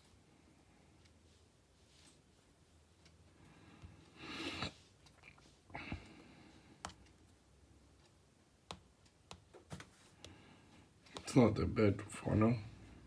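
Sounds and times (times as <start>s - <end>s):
tapping on tablet clicks: 8.6s - 10.4s.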